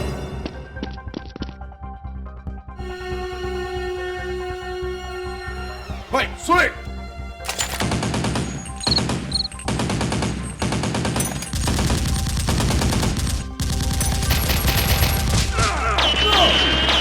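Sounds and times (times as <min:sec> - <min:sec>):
automatic gunfire: 0:07.5 - 0:17.0.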